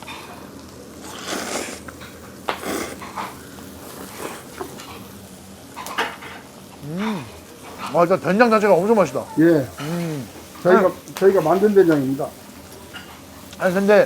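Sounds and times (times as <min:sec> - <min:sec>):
slurping and chewing: 0:00.9 - 0:05.1.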